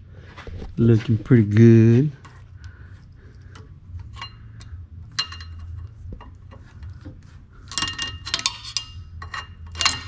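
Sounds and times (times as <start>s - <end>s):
steady low hum: 0.0s - 10.0s
metallic clinks and rattles: 3.3s - 7.0s, 7.6s - 10.0s.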